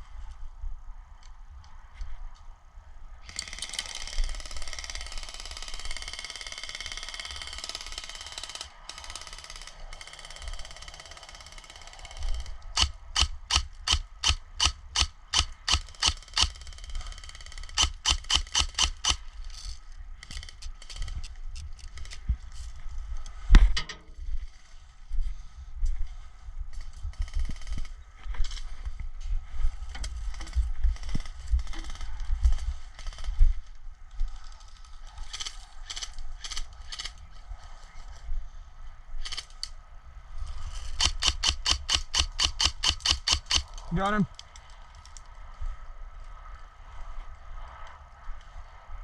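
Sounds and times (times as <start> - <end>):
airsoft gun shots: 12.8 - 16.6, 17.7 - 19.2, 41.0 - 43.6.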